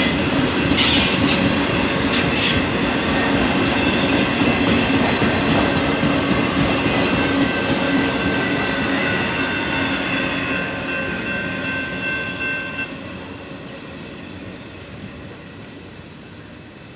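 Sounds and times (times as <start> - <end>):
freight train cars rolling: 0.0 - 12.4.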